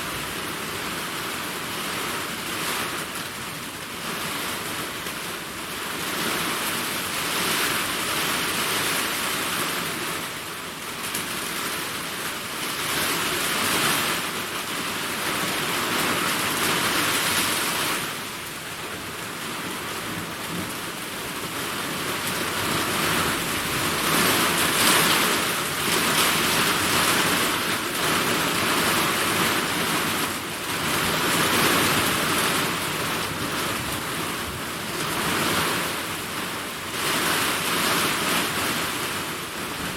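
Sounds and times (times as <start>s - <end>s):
heavy rain hissing: 0.0s - 39.9s.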